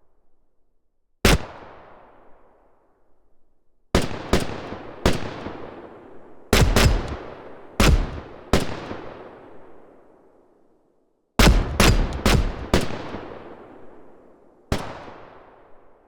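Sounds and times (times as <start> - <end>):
echoing gunshots: 1.2 - 2.3, 4.0 - 10.0, 11.4 - 15.8.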